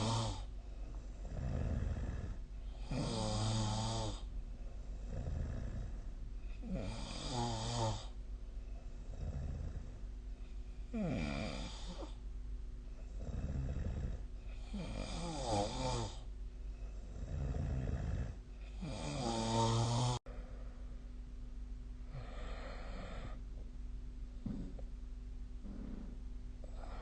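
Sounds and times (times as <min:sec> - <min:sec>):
person snoring loudly: 0:00.0 - 0:00.5, 0:01.2 - 0:04.3, 0:05.0 - 0:06.0, 0:06.6 - 0:08.2, 0:10.9 - 0:12.2, 0:13.2 - 0:16.3, 0:17.1 - 0:20.2
soft breathing: 0:00.0 - 0:03.3, 0:04.0 - 0:14.9, 0:20.2 - 0:21.1, 0:22.0 - 0:23.7, 0:25.6 - 0:27.0.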